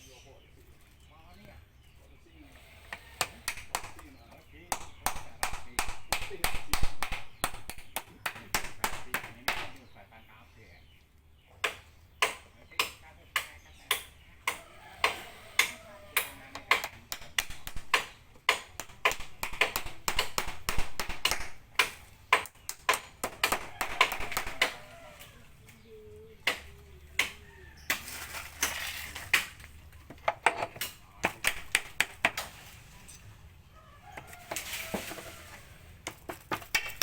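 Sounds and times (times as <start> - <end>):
sharp clicks and knocks: 11.6 - 24.9, 36.0 - 37.0.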